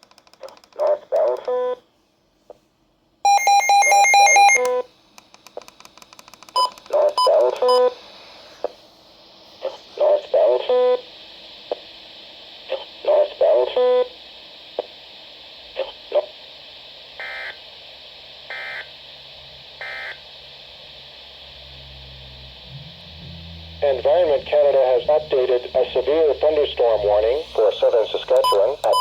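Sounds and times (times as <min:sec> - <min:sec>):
radio hiss: 0:06.8 - 0:29.0.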